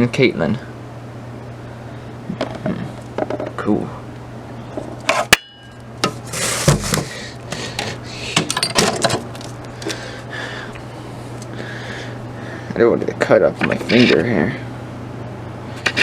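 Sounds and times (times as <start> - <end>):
steady low hum: 0.0 - 16.0
scraping rustle: 6.1 - 7.2.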